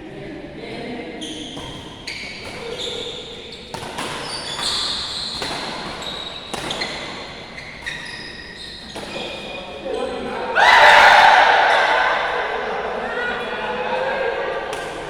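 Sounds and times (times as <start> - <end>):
shoes squeaking on court: 1.2 - 10.2
racket hitting shuttlecock: 3.7 - 8.0.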